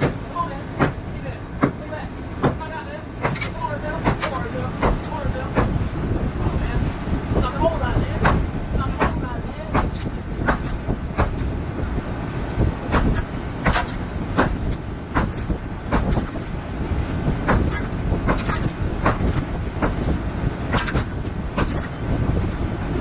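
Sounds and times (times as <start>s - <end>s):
sledgehammer striking concrete: 3.2s - 5.8s, 8.2s - 11.5s, 12.9s - 16.3s, 17.5s - 20.1s, 20.7s - 21.9s.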